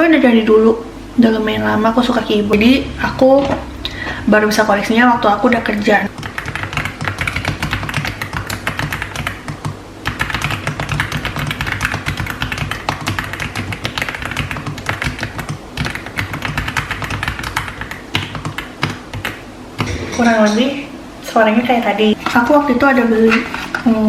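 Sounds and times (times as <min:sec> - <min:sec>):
mechanical keyboard typing: 0:06.1 - 0:19.4.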